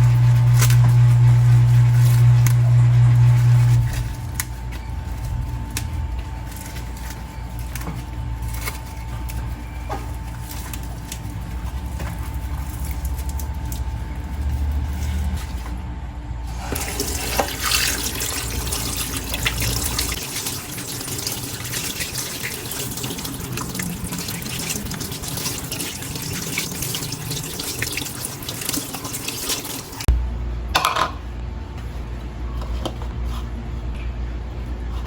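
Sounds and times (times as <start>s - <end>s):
tap water running into sink: 16.5s - 30.1s.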